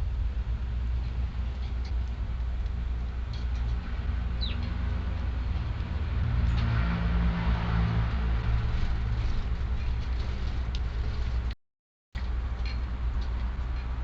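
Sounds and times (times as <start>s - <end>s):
strong gusty wind on microphone: 0.0s - 11.6s
sparrow chirp: 4.4s - 4.8s.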